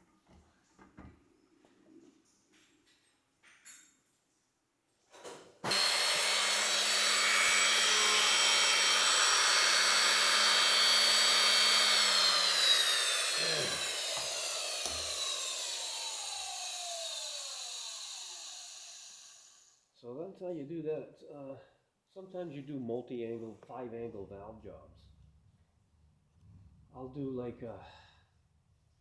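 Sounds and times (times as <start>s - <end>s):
power tool motor whine: 5.6s - 19.7s.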